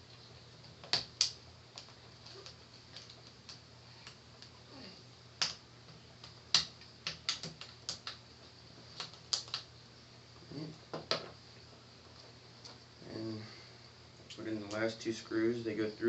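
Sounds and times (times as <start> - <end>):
small parts clicking and tapping: 5.4 - 8.2, 8.9 - 9.7.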